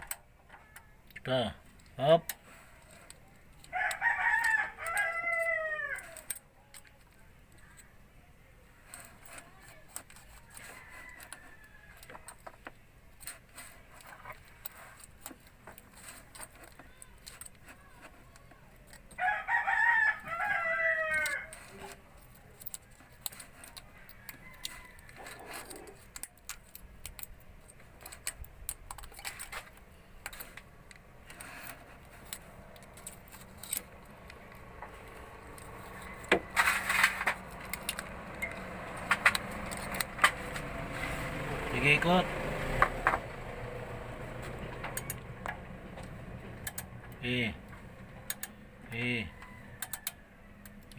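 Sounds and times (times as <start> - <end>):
hand tools clicking and tapping: 0.0 - 7.9, 8.8 - 19.3, 20.0 - 41.1, 44.4 - 50.9
rooster crowing: 3.6 - 6.3, 10.4 - 12.4, 19.1 - 21.8, 23.7 - 26.0, 34.4 - 40.2, 48.9 - 50.9.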